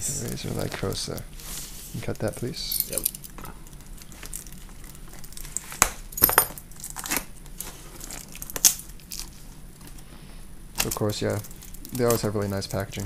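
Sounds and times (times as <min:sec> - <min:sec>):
packaging crinkling and tearing: 0:03.2 - 0:05.8, 0:06.7 - 0:10.0, 0:10.8 - 0:13.0.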